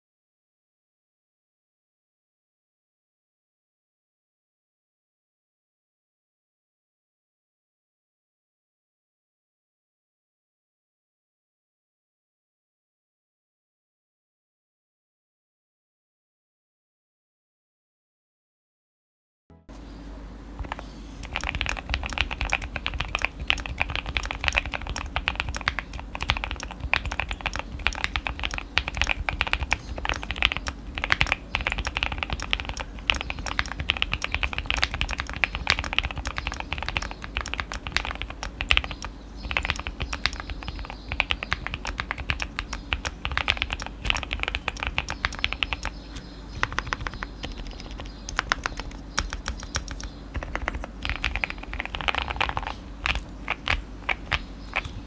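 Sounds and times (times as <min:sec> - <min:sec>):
mechanical keyboard typing: 0:19.7 - 0:55.0.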